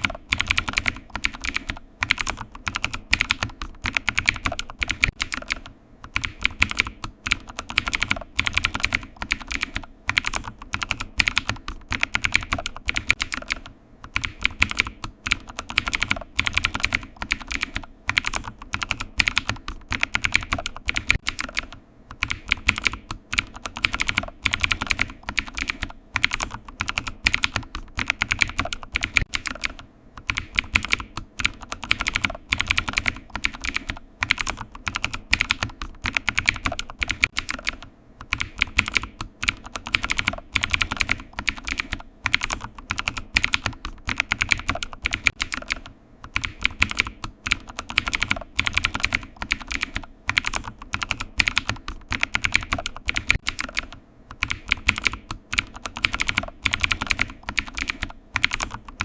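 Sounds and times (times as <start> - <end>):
keyboard typing clicks: 0.0 - 59.0.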